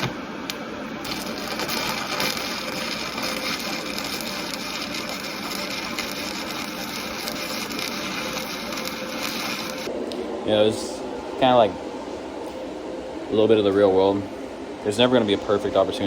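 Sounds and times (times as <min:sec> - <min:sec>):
welding arc crackling: 0:01.0 - 0:09.9.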